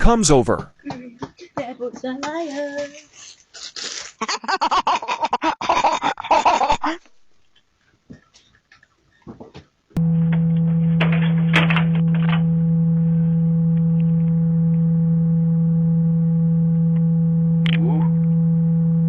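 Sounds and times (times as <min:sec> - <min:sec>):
loud low hum: 0:10.0 - 0:19.0.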